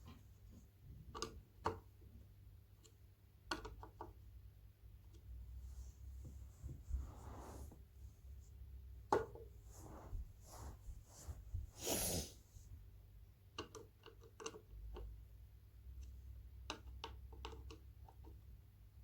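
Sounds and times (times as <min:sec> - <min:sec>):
clicks and taps of hand work: 0:01.0 - 0:01.9, 0:02.8 - 0:04.2, 0:13.5 - 0:15.2, 0:15.9 - 0:18.4
short breathy noise: 0:11.7 - 0:12.4.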